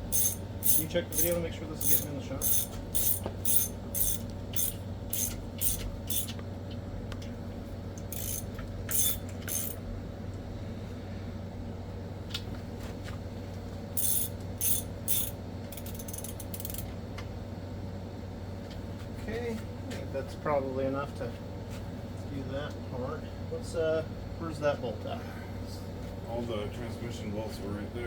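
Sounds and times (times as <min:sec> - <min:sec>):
socket ratchet clicking: 0:00.0 - 0:06.3, 0:08.1 - 0:09.8, 0:14.0 - 0:16.8.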